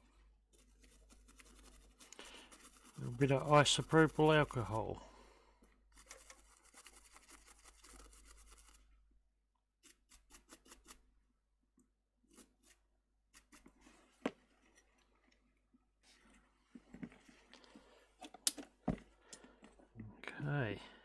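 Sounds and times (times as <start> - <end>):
small brush scrubbing circuit board: 0.0 - 5.0, 5.9 - 8.9, 9.8 - 11.0, 12.3 - 15.0
light clicks and scrapes: 5.9 - 8.8, 13.4 - 18.7.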